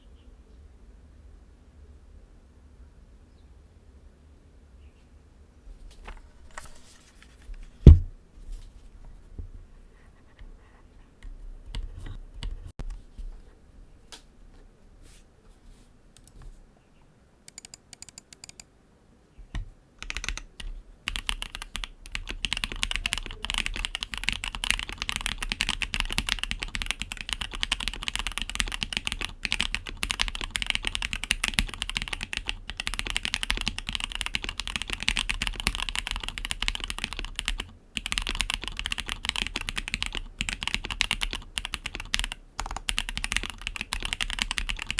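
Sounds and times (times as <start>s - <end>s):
mechanical keyboard typing: 17.5s - 18.7s, 20.0s - 44.9s.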